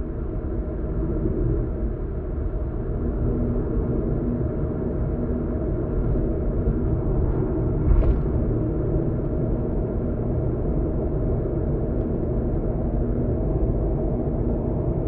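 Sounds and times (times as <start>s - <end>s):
car road and engine noise: 0.0s - 15.0s
brief loud thump: 7.8s - 8.4s.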